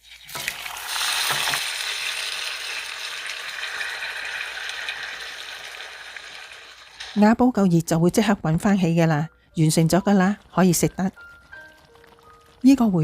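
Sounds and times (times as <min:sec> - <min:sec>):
food sizzling in clay pot: 0:00.0 - 0:07.5, 0:09.8 - 0:13.0.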